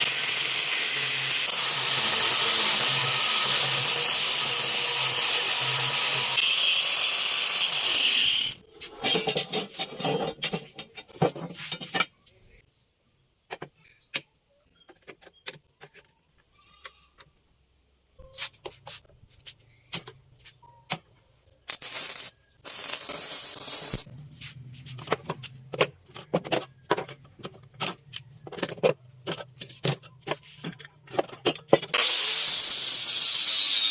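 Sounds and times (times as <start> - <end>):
angle grinder cutting steel: 0.0 - 8.6, 21.7 - 24.1, 31.9 - 33.9
metal parts knocking and clinking: 9.0 - 12.2, 25.1 - 32.0.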